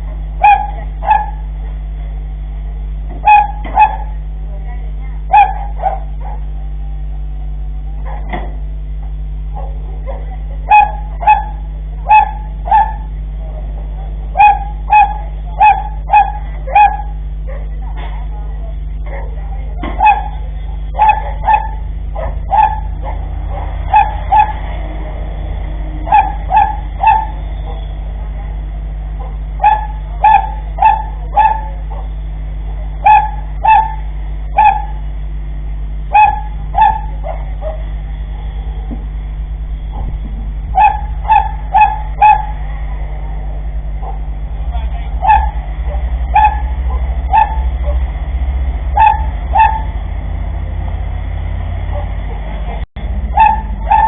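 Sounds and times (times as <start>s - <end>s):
steady low hum: 0.0s - 54.0s
dog barking: 0.4s - 1.5s, 3.2s - 4.2s, 5.3s - 6.8s, 8.0s - 8.6s, 9.5s - 18.3s, 19.0s - 25.3s, 26.0s - 32.2s, 32.8s - 35.0s, 36.1s - 38.0s, 40.7s - 42.7s, 44.0s - 48.1s, 48.9s - 50.8s, 51.8s - 52.5s, 53.3s - 54.0s.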